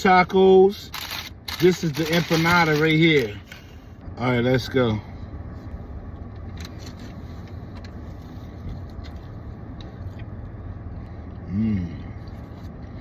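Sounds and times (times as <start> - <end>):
car running hum from inside: 0.0 - 13.0.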